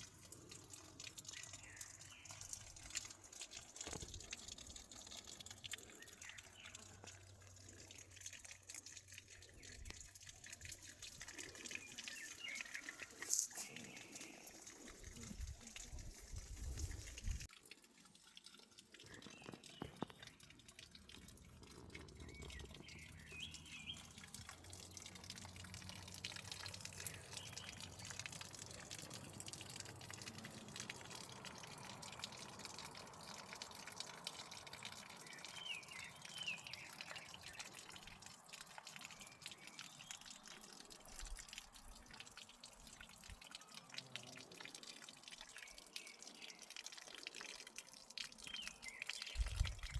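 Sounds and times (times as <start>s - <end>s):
bird chirps: 22.0s - 24.2s.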